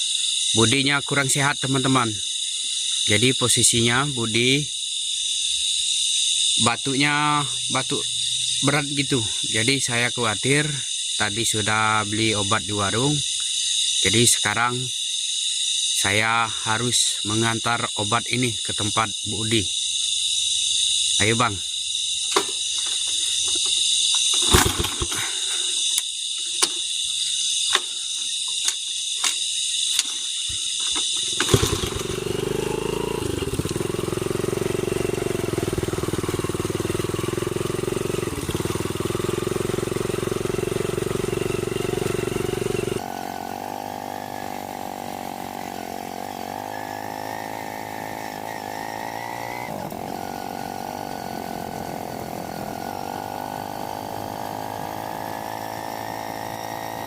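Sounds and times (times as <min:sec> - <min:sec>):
night insects chirping: 0:00.0 - 0:57.0
motorcycle engine: 0:22.2 - 0:57.0.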